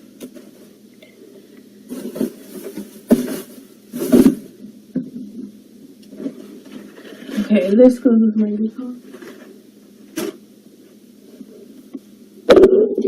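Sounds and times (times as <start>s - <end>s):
objects rustling and clattering: 0.2s - 0.8s, 1.8s - 5.5s, 6.1s - 7.8s, 9.0s - 12.0s.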